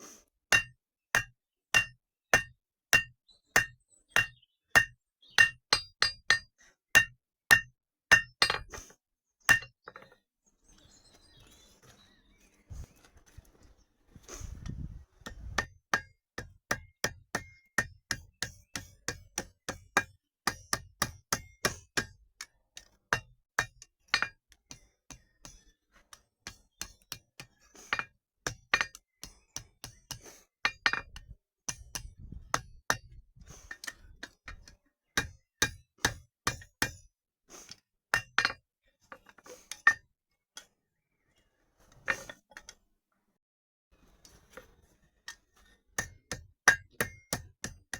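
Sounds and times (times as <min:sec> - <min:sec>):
hammer striking steel on anvil: 0:00.5 - 0:08.7, 0:09.5 - 0:09.7, 0:46.0 - 0:47.8.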